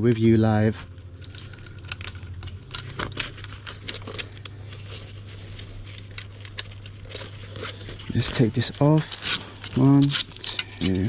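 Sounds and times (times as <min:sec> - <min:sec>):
steady low hum: 0:00.0 - 0:11.0
hands clicking and tapping small parts: 0:01.2 - 0:05.0.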